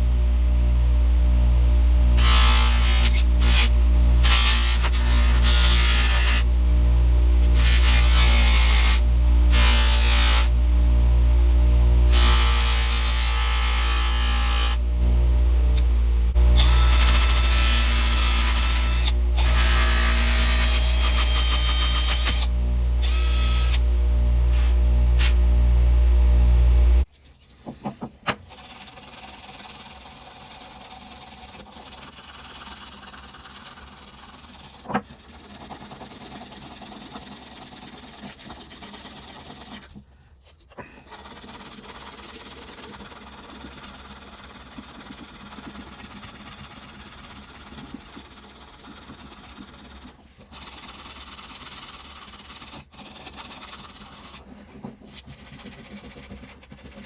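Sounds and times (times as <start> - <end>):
power tool grinding: 0.0 - 27.1.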